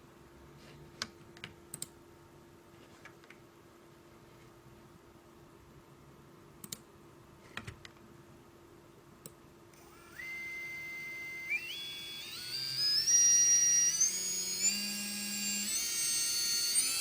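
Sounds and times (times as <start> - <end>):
electric motor whining: 9.8 - 17.0.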